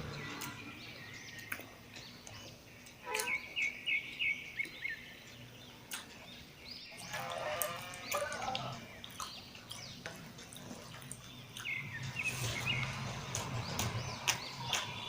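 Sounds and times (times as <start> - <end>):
wet chewing and lip smacking: 0.1 - 15.0.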